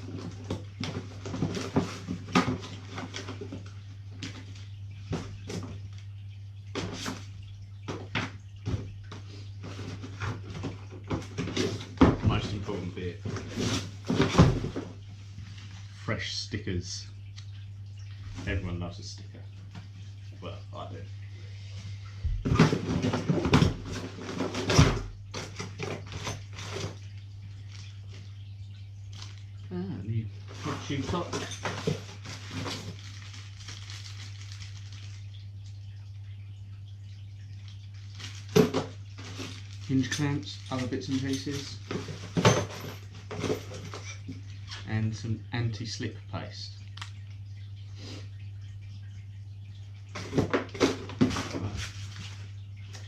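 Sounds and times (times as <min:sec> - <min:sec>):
rummaging through cardboard packaging: 0:00.0 - 0:03.6, 0:30.5 - 0:35.2, 0:38.0 - 0:44.2.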